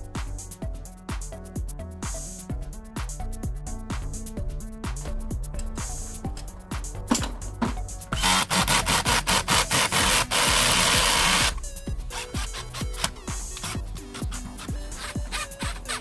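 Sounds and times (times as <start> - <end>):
electronic music with steady beat: 0.0 - 16.0
rasping cutting tool: 8.1 - 16.0.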